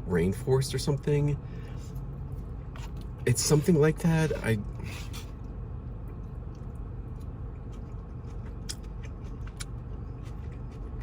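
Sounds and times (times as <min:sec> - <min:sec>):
person chewing food: 0:04.3 - 0:11.0.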